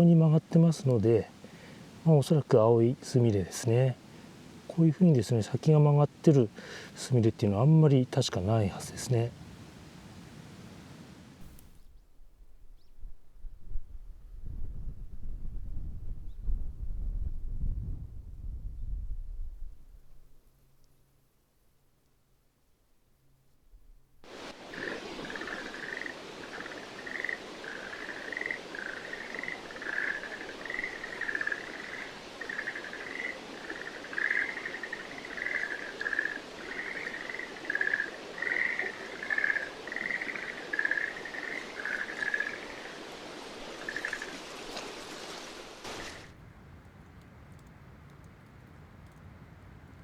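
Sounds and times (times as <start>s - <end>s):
steady background hiss: 0.0s - 13.0s, 19.8s - 49.2s
tree frogs croaking: 24.2s - 46.4s.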